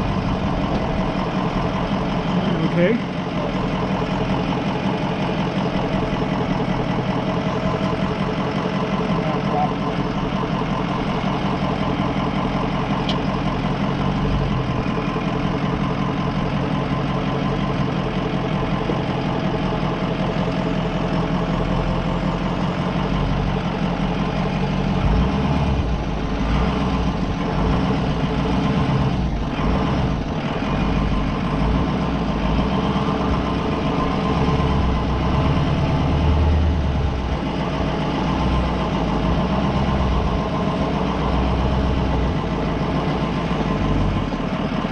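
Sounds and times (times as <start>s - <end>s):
van engine running near idle: 0.0s - 44.9s.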